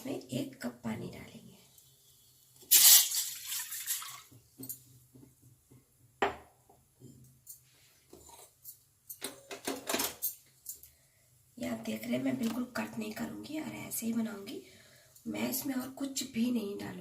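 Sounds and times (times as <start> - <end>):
water poured into pan: 2.7 - 4.3.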